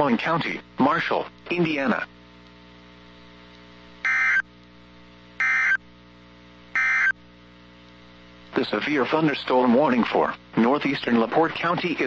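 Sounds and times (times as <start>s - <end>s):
faint steady hum: 0.0s - 12.0s
warbling digital data tones: 4.0s - 4.4s, 5.4s - 5.8s, 6.8s - 7.2s.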